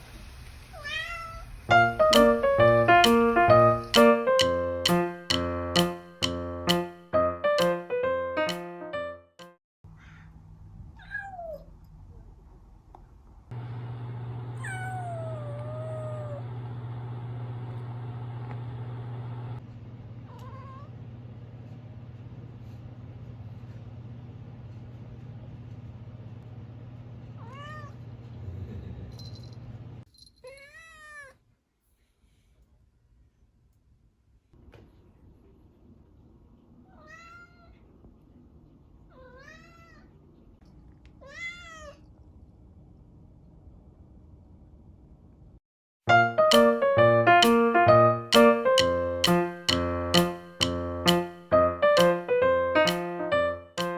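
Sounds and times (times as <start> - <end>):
kitten meowing: 14.6 - 16.4, 20.3 - 20.9.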